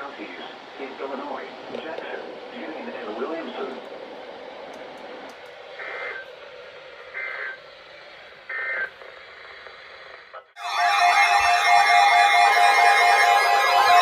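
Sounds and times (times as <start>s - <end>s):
radio hiss: 0.0s - 10.5s.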